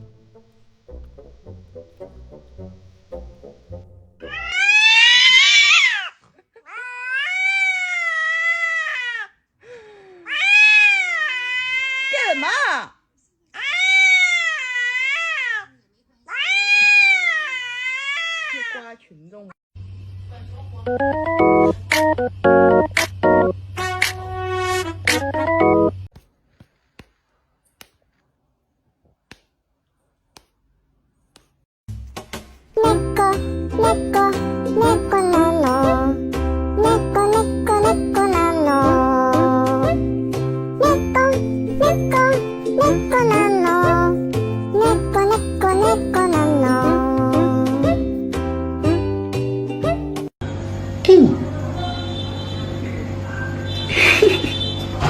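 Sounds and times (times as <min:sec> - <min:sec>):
organ music: 0:00.0 - 0:04.6, 0:20.9 - 0:23.6, 0:25.2 - 0:26.1
cat yowling: 0:04.3 - 0:09.3, 0:10.3 - 0:12.5, 0:13.6 - 0:15.7, 0:16.3 - 0:18.9.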